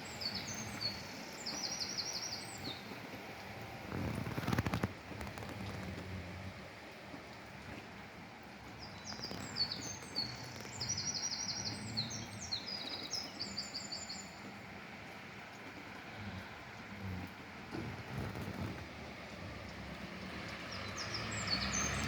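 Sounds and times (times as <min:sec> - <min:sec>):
rain hissing: 0:00.0 - 0:22.0.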